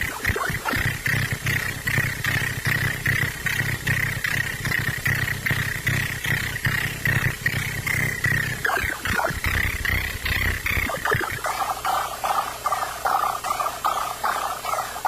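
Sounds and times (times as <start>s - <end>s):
low gritty synthesizer drone: 0.0s - 15.0s
steady high tone: 10.6s - 12.8s.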